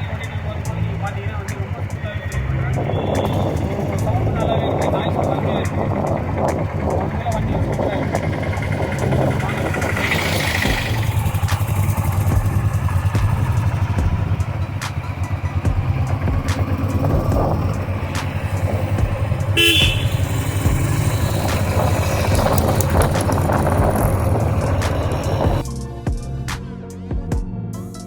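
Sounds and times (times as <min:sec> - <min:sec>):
vehicle horn honking: 0:00.0 - 0:25.4
motorcycle engine thumping: 0:00.0 - 0:26.5.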